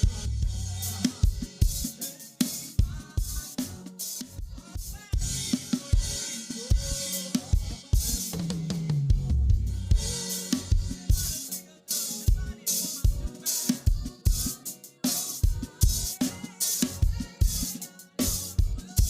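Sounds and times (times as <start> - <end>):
drum kit playing: 0.0 - 19.0.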